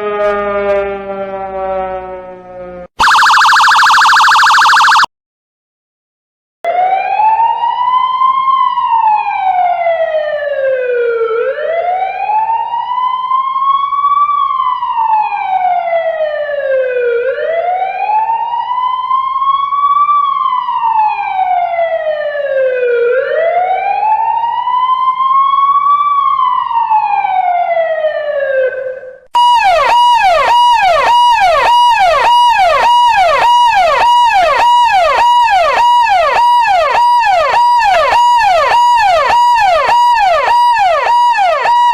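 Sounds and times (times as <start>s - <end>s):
electronic siren wailing: 0.0s - 5.1s, 26.8s - 41.9s
siren fast yelp: 3.0s - 5.1s, 28.5s - 41.9s.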